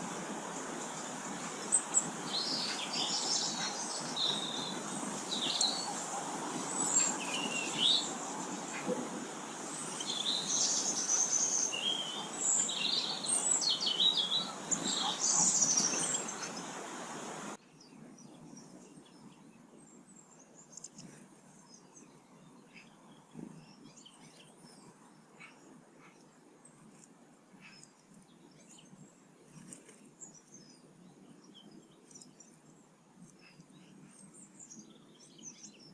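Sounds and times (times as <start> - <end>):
small birds chirping: 0.0 - 35.9.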